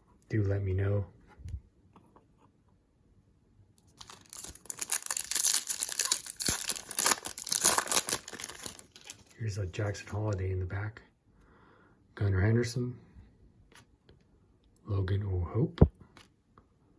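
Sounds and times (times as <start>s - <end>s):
foil wrapper tearing and crinkling: 3.9s - 9.3s.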